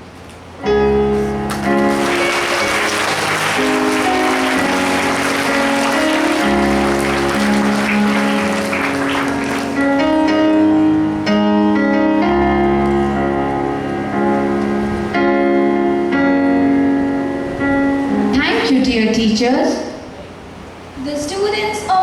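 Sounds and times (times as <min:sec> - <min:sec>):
audience applauding: 0:01.5 - 0:10.3
keyboard music slow chords: 0:09.5 - 0:18.3.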